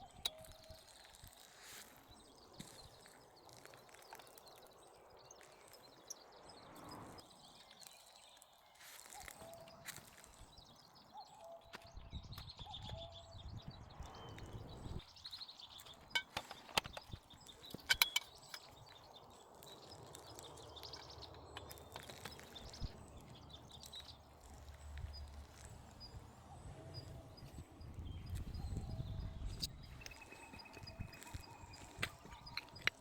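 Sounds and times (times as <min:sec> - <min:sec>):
birds chirping: 0:00.0 - 0:33.0.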